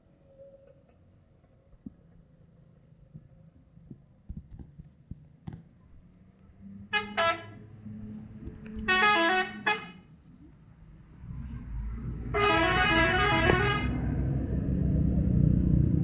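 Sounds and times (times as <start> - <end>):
bus horn blasts: 6.9 - 7.7, 8.8 - 10.1, 12.3 - 14.1
musical bus horn tune: 6.9 - 7.7, 8.8 - 10.1, 12.3 - 14.2.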